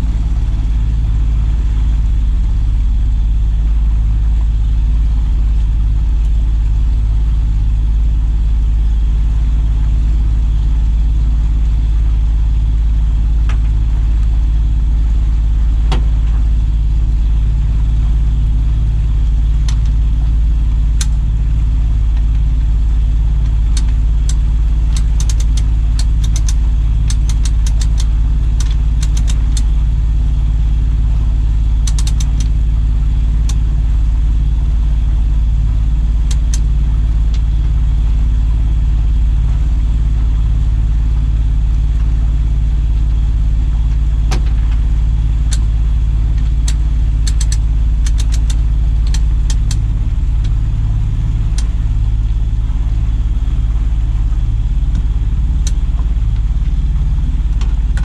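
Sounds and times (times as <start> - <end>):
outboard motor droning: 0.0 - 58.0
sharp clicks: 23.4 - 29.7, 31.8 - 32.5, 46.4 - 50.6.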